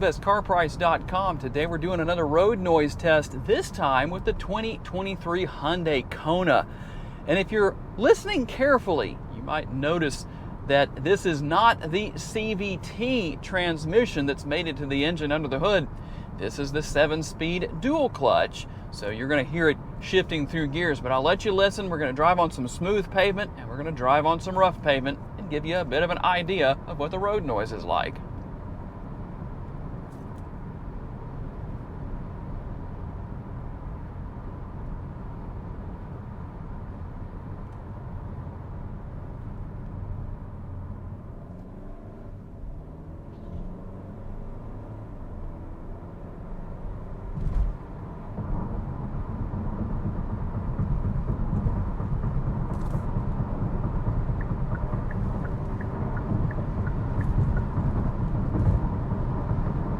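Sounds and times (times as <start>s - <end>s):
car engine shifting gears: 37.0s - 59.9s
tyre and road rumble: 39.4s - 59.9s
thump: 47.3s - 47.8s.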